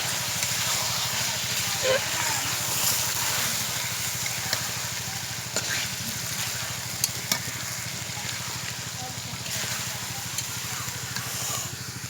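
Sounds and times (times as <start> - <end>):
chicken sizzling in a pot: 0.0 - 12.0
sharp clicks against pot: 7.0 - 7.5.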